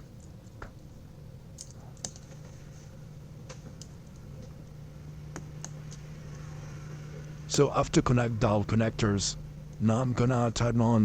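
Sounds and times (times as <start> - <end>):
steady low hum: 0.0 - 11.0
small parts clicking and tapping: 1.6 - 2.4.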